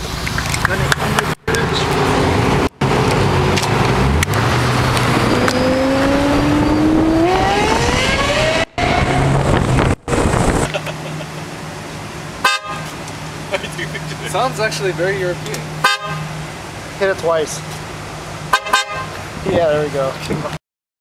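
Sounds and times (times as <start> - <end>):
sports car engine accelerating hard: 0.5 - 12.4.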